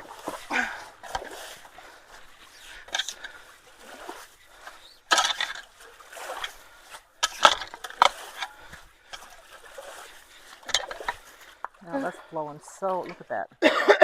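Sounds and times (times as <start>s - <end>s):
water trickling: 0.0s - 13.4s
water splashing and sloshing: 0.0s - 14.0s.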